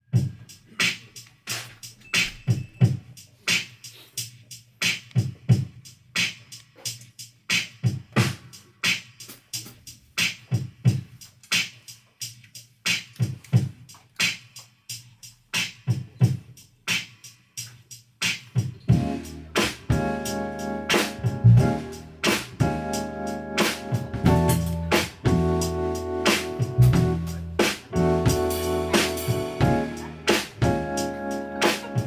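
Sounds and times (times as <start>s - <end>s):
band playing a groove: 18.3s - 32.0s
bass line: 18.9s - 32.0s.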